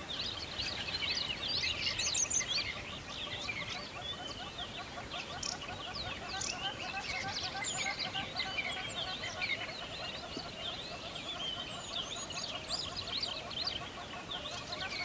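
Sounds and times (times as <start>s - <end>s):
songbirds chirping: 0.0s - 15.0s.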